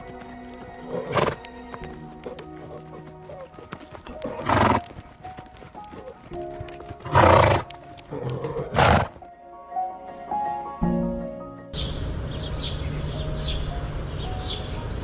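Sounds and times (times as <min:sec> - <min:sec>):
soft background music: 0:00.0 - 0:15.0.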